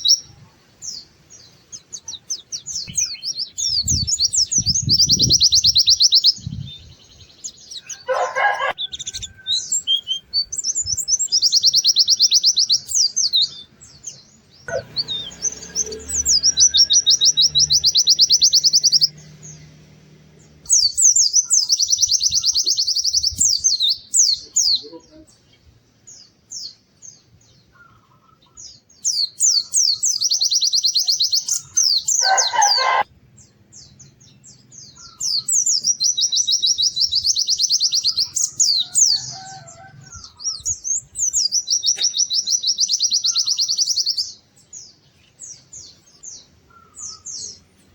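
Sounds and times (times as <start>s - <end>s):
bird trilling song: 0.0s - 47.9s
harsh bird call: 7.8s - 10.3s, 31.4s - 33.1s.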